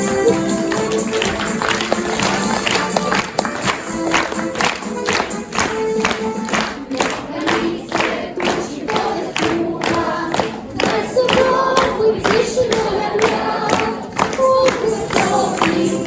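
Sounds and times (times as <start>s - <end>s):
music with steady beat: 0.0s - 16.0s
choir-like singing: 6.4s - 16.0s.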